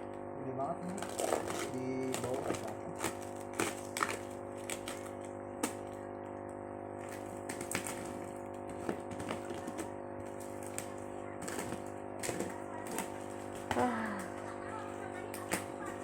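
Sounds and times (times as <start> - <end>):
steady background hum: 0.0 - 16.0.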